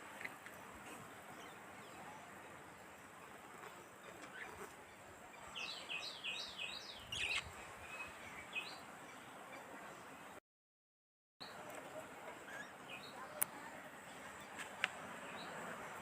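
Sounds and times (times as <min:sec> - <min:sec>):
budgerigar chirping: 0:05.4 - 0:07.5.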